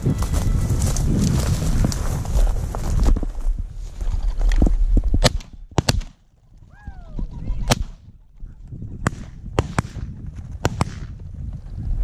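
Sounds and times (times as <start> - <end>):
shotgun shots: 5.2 - 6.2, 7.7 - 8.0, 9.0 - 11.2.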